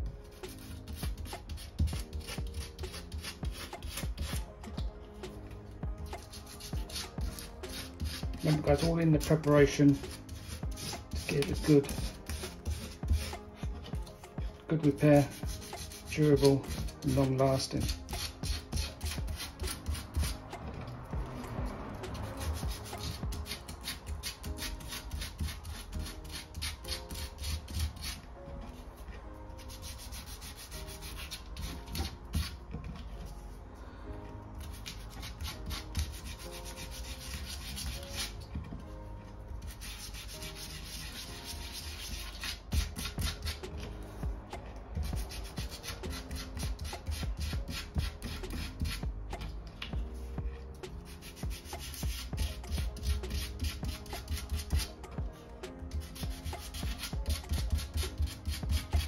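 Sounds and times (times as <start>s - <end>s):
sandpaper rubbing on plastic: 6.2s - 13.4s, 39.7s - 43.6s.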